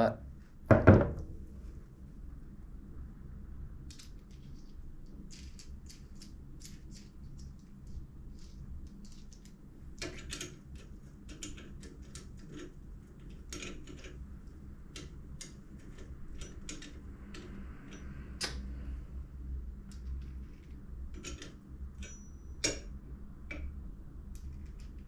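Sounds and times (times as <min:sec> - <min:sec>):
sharp knock: 0:00.7 - 0:01.3.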